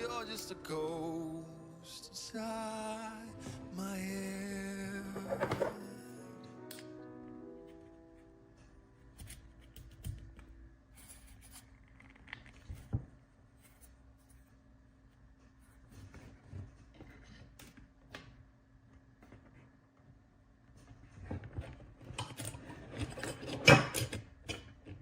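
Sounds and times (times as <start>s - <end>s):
parts and tools handled: 5.2s - 5.8s, 9.0s - 14.5s, 20.8s - 25.0s.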